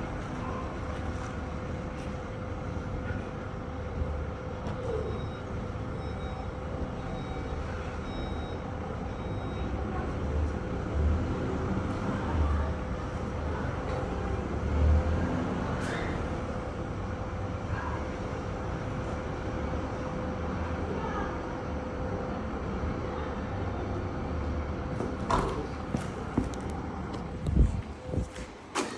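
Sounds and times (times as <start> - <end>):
steady thin hum: 24.8 - 28.8.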